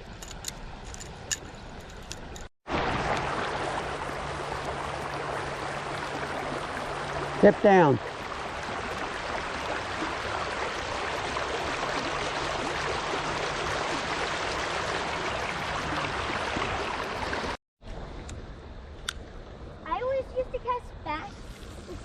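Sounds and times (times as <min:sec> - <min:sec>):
creek water rushing: 0:02.7 - 0:17.6.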